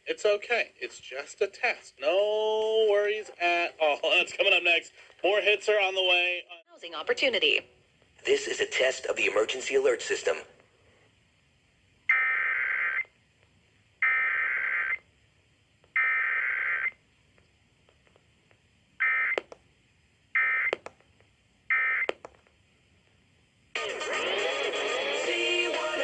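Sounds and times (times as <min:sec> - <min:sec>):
music: 0:23.8 - 0:26.0.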